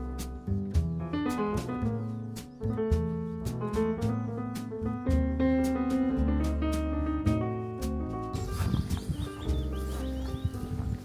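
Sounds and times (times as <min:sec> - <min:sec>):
background music with held notes: 0:00.0 - 0:11.0.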